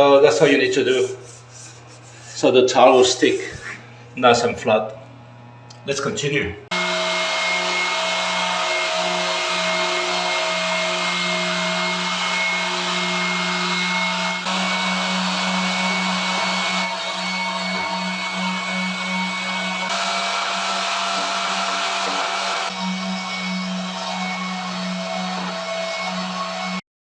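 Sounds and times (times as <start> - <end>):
electric sander running: 6.7 - 26.8.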